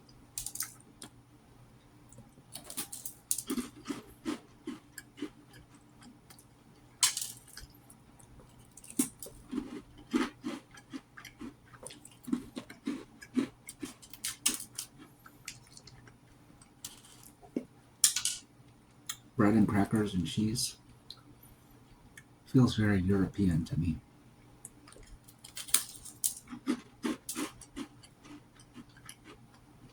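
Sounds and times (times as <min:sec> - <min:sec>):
person chewing crunchy food: 0:02.1 - 0:06.5, 0:07.6 - 0:17.7, 0:24.7 - 0:29.9.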